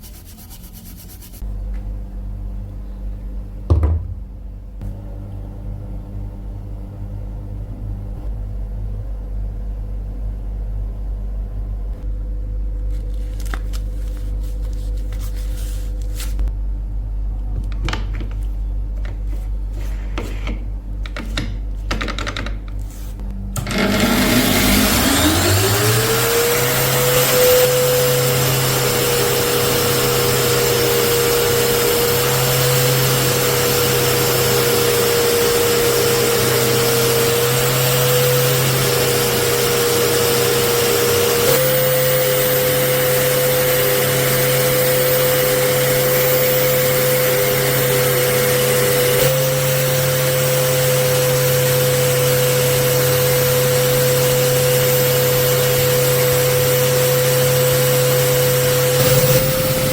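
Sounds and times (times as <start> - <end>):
low steady hum: 0.0 - 26.2
power tool motor whining: 23.6 - 59.9.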